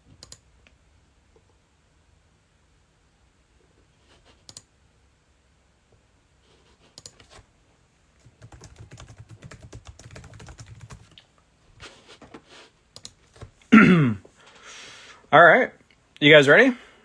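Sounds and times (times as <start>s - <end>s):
keyboard typing: 0.2s - 0.4s, 4.4s - 4.7s, 7.0s - 7.4s, 8.2s - 11.3s, 13.0s - 13.6s.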